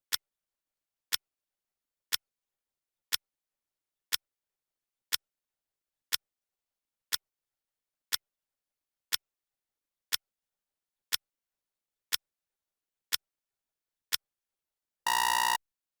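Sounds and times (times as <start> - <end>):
clock ticking: 15.1 - 15.6
electronic alarm beep: 15.1 - 15.6.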